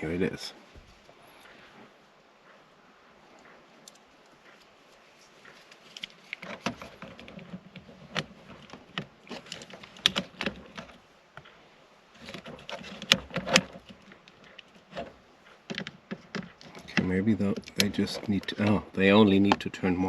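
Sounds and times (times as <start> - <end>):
tool clicking on dashboard parts: 5.9 - 11.0, 12.2 - 18.8.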